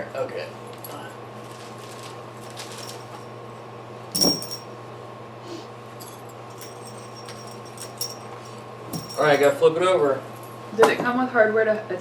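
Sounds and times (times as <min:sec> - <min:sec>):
steady low hum: 0:00.0 - 0:12.0
metal hardware clinking: 0:04.2 - 0:04.7.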